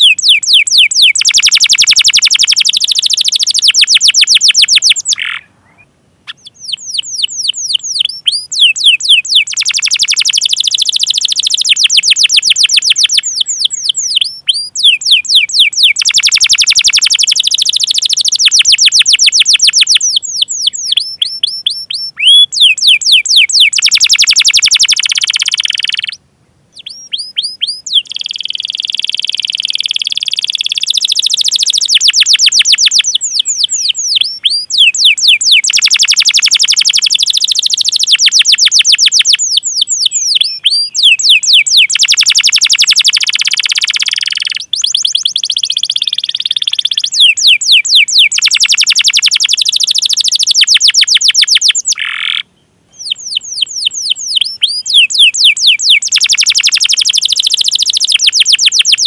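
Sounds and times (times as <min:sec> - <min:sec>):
canary singing trills: 0:00.0 - 0:59.0.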